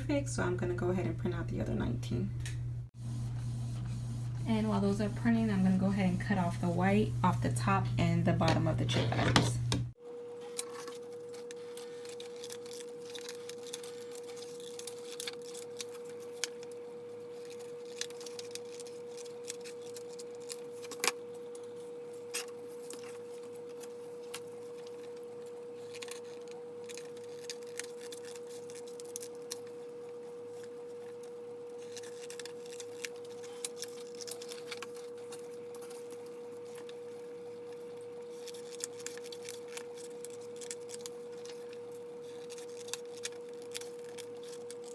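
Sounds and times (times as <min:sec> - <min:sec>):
steady hum tone: 0:00.0 - 0:10.2
scissors cutting paper bags: 0:10.4 - 0:44.9.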